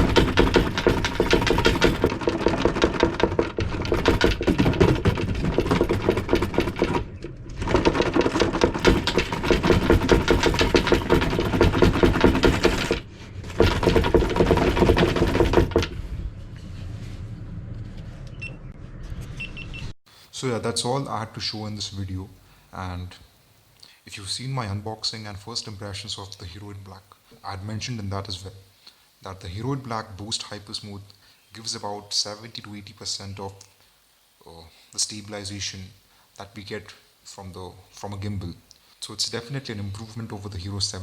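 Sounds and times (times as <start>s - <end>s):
rc car mechanical rattle: 0.0s - 16.0s.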